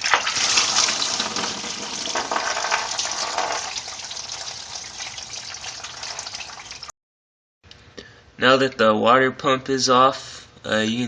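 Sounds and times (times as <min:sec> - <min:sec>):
coolant splashing into a pan: 0:00.0 - 0:06.9.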